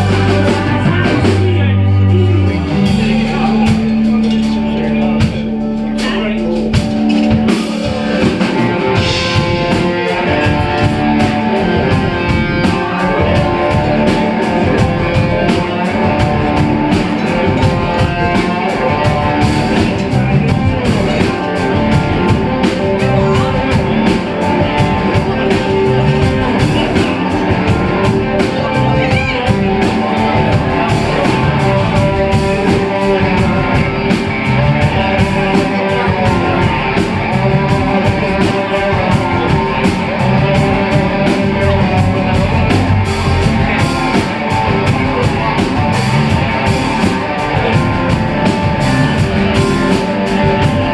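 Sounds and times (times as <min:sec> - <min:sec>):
bass guitar: 0:00.0 - 0:50.9
drum kit beat: 0:00.0 - 0:50.9
electric guitar: 0:00.0 - 0:50.9.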